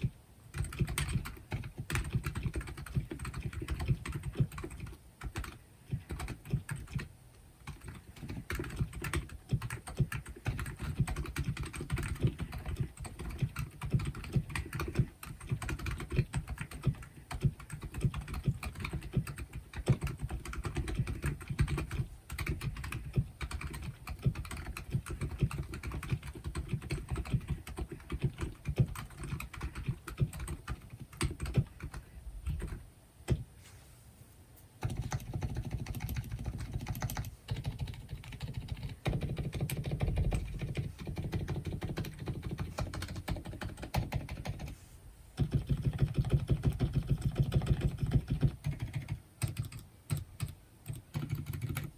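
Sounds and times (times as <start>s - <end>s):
muffled mechanical keyboard typing: 0.0s - 33.4s, 34.8s - 44.8s, 45.4s - 51.9s.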